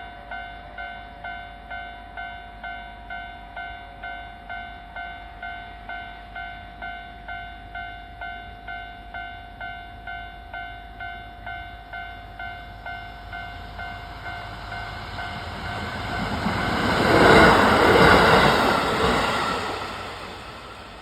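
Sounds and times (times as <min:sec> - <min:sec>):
level crossing warning bell: 0:00.0 - 0:21.0
diesel train passing: 0:10.9 - 0:21.0.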